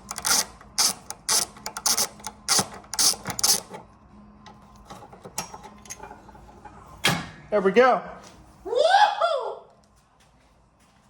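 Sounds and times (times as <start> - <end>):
ratchet wrench clicking: 0.0 - 3.8.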